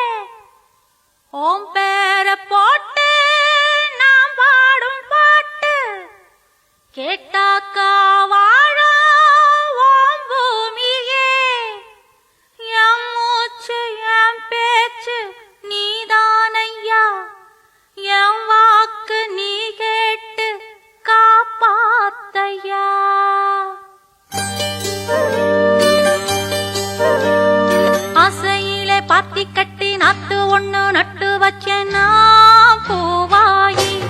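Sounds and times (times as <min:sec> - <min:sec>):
singer breathing: 0:12.2 - 0:12.6, 0:17.6 - 0:18.0
person singing unaccompanied: 0:12.6 - 0:34.0.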